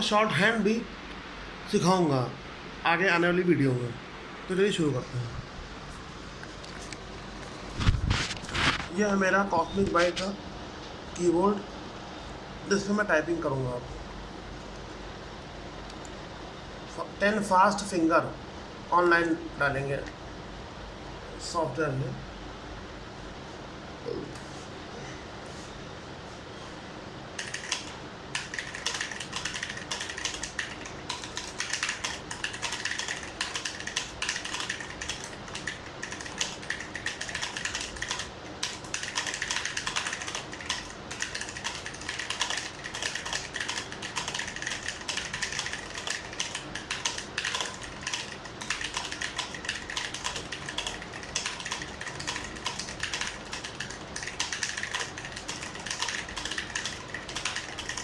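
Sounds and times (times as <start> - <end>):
fast mechanical keyboard typing: 27.4 - 58.0.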